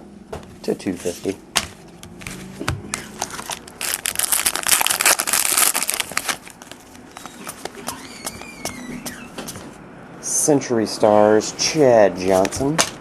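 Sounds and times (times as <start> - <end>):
card handling rustles and clicks: 1.8 - 8.0
wrapper crinkling: 2.4 - 7.7.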